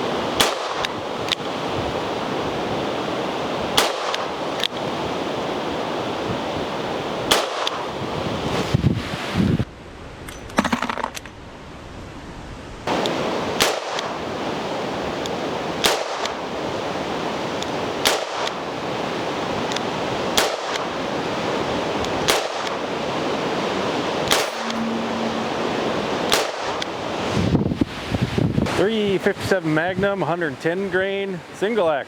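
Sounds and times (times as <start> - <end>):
wind noise on microphone: 0.0 - 10.6, 21.1 - 30.1
revolver gunshots: 24.3 - 24.7, 26.3 - 26.8.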